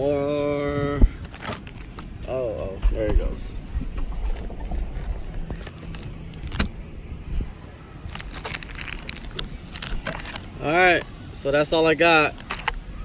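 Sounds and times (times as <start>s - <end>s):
plastic packaging clicks and rustles: 1.2s - 2.4s, 4.2s - 6.7s, 8.1s - 11.1s, 12.2s - 12.8s.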